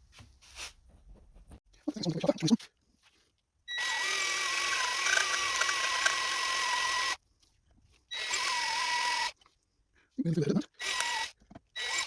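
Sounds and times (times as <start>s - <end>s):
electric drill whining: 3.7s - 7.2s, 8.1s - 9.4s, 10.8s - 12.0s.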